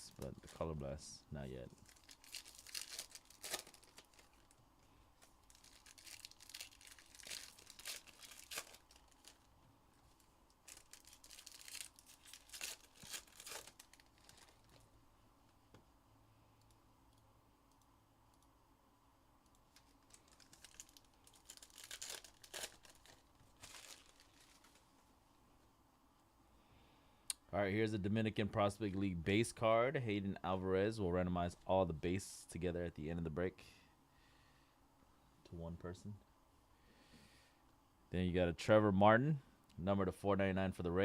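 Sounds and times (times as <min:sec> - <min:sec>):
card pack wrappers tearing and crinkling: 0:01.7 - 0:04.6, 0:05.2 - 0:09.5, 0:10.6 - 0:14.8, 0:19.7 - 0:24.9.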